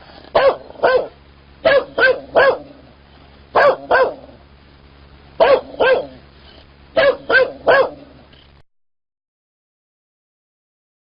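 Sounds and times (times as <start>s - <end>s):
dog barking angrily: 0.2s - 2.9s, 3.5s - 4.4s, 5.4s - 6.2s, 6.9s - 8.2s.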